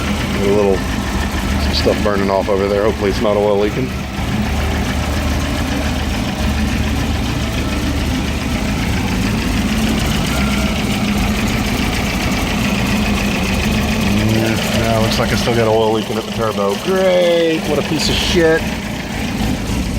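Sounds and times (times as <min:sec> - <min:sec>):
turbocharged engine idling: 0:00.0 - 0:19.9.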